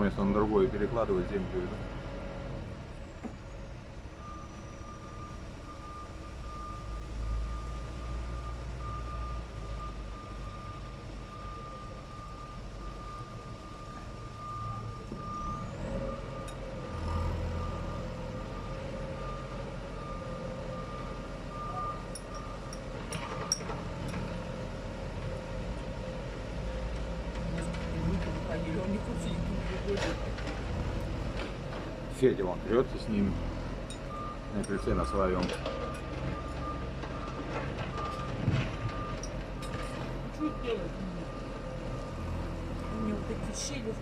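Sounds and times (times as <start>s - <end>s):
diesel engine rumble: 0.0s - 44.0s
reversing alarm beeping: 3.3s - 24.4s, 33.9s - 43.9s.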